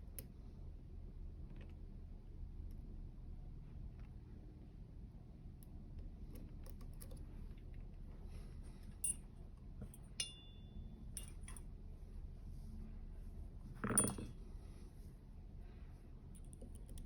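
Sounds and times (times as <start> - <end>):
metallic clicks of lock picking: 11.2 - 11.6.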